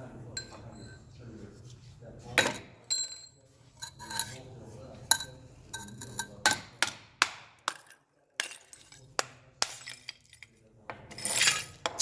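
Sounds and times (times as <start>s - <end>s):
crunching scrape: 11.1s - 12.0s.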